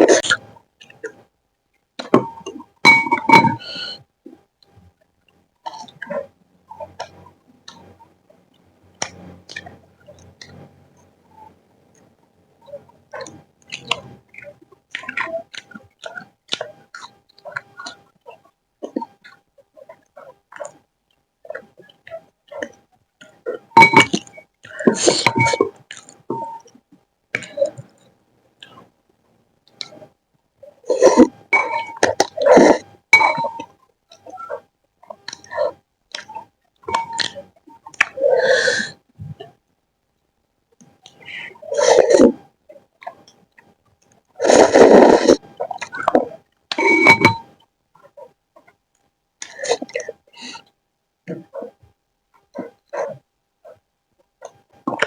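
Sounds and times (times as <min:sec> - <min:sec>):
utensil clinking against a dish: 0:02.1 - 0:04.0, 0:23.8 - 0:24.2, 0:24.9 - 0:25.7, 0:31.6 - 0:32.3, 0:33.2 - 0:33.7, 0:36.9 - 0:37.3, 0:46.7 - 0:47.4.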